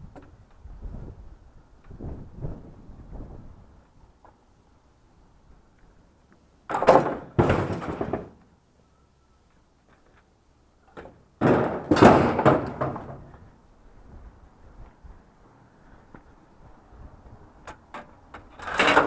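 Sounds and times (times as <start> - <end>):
junk knocking and scraping: 6.7 - 8.4, 10.9 - 13.5.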